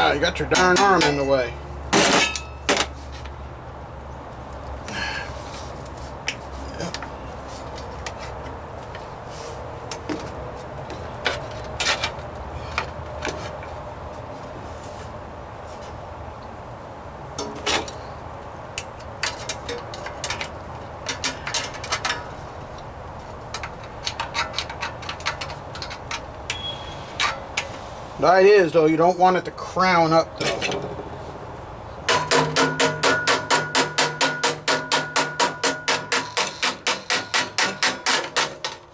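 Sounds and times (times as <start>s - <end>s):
steady low hum: 25.0s - 32.1s
hammer striking sheet metal: 32.1s - 38.8s.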